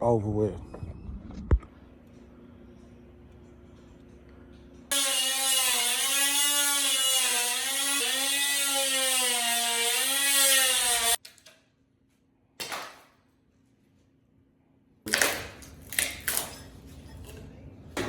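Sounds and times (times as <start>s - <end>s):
electric power tool running: 4.9s - 11.2s.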